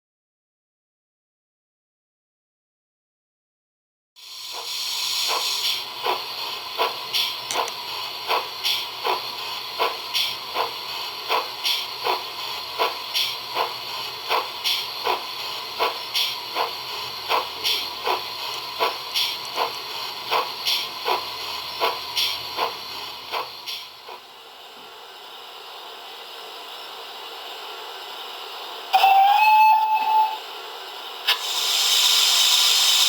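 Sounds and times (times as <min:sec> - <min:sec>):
model steam engine chuffing: 0:04.2 - 0:24.4, 0:31.1 - 0:33.0
steady steam hiss: 0:04.2 - 0:33.0.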